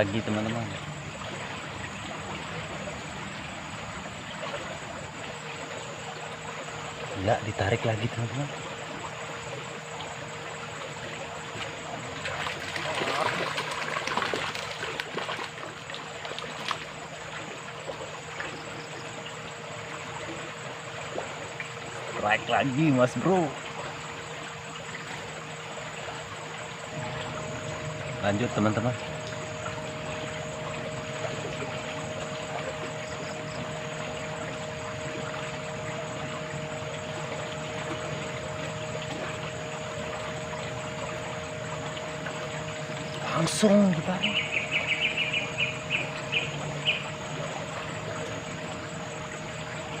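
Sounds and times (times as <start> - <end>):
water running and trickling: 0.0 - 50.0
two-note hum: 21.1 - 50.0.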